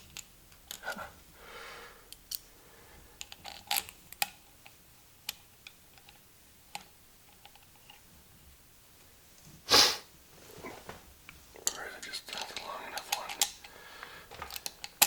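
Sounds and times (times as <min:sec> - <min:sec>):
hand tools and bolts clicking: 0:14.3 - 0:15.0.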